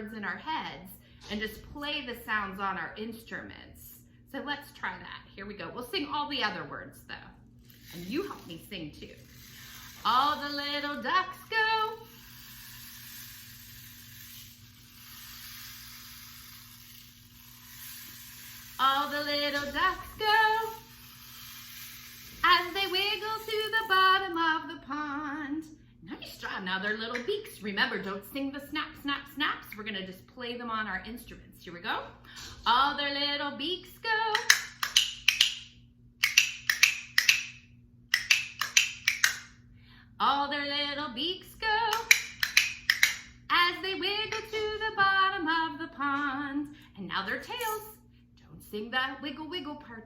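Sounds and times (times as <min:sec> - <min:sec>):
rain stick beads trickling: 0:07.6 - 0:24.2.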